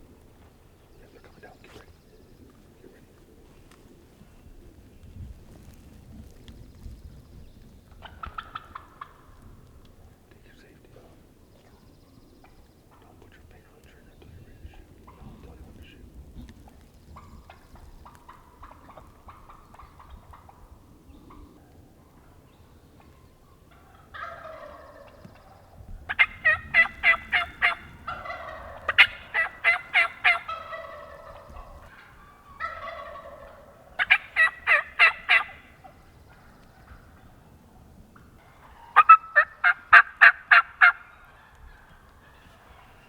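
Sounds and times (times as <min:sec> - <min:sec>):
low rough turkey calls: 0:00.0 - 0:43.0
turkeys calling quick notes: 0:07.9 - 0:11.4, 0:12.4 - 0:22.4, 0:23.0 - 0:37.6, 0:38.2 - 0:43.0.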